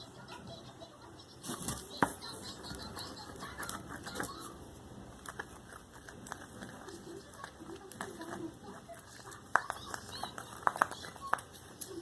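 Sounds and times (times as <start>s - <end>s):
clicks and taps handling objects: 1.4s - 12.0s.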